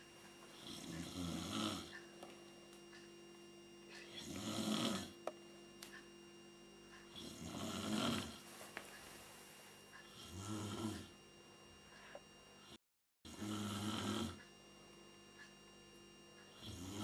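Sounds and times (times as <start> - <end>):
person snoring: 0.5 - 1.9, 4.0 - 5.2, 7.1 - 8.4, 10.1 - 11.1, 13.3 - 14.4, 16.5 - 17.0.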